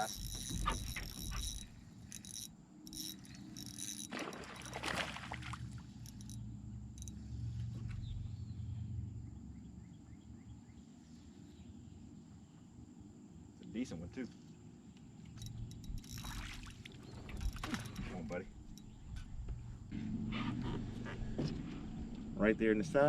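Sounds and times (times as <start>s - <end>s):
fishing reel clicks: 0.0s - 4.8s, 6.0s - 6.4s, 15.4s - 16.5s, 17.4s - 18.0s
faint insect chirps: 0.0s - 4.9s, 5.9s - 7.4s, 15.1s - 19.2s
low hum: 0.0s - 9.4s.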